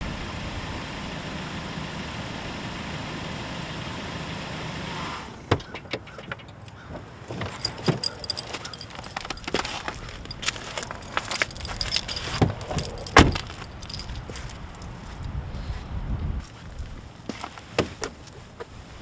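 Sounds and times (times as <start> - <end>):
car engine idling: 7.0 - 14.8
keys jangling: 7.4 - 14.9.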